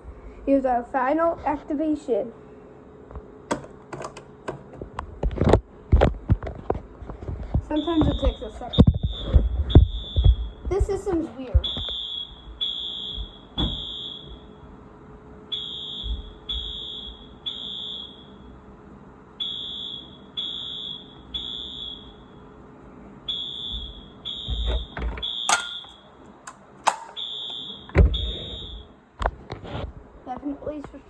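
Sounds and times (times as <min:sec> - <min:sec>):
sharp clicks and knocks: 0:03.5 - 0:04.9, 0:25.5 - 0:27.2
fire alarm horn beeping: 0:11.9 - 0:14.5, 0:15.5 - 0:18.4, 0:19.4 - 0:22.2, 0:23.3 - 0:24.6, 0:25.2 - 0:26.0, 0:26.8 - 0:27.8.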